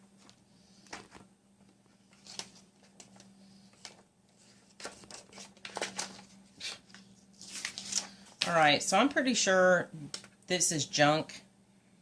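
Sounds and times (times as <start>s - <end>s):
paper rustling: 0.2s - 1.3s, 1.9s - 8.8s.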